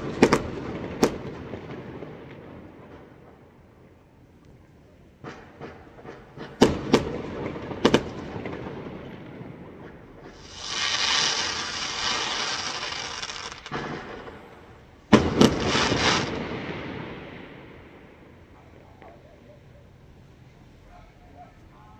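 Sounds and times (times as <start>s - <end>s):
fireworks crackling hiss: 0.0s - 3.3s, 5.2s - 19.4s
fireworks bangs: 0.0s - 3.9s, 5.1s - 19.4s.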